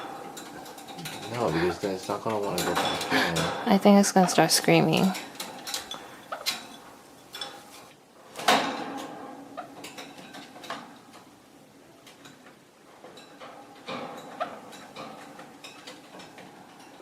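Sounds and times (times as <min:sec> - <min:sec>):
light knocks and rattles in cage: 0:00.0 - 0:03.6, 0:12.1 - 0:17.0.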